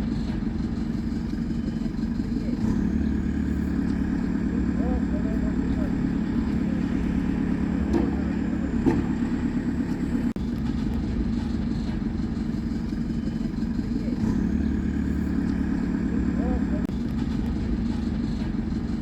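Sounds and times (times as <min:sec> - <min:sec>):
vehicle engine and road rumble: 0:00.0 - 0:19.0.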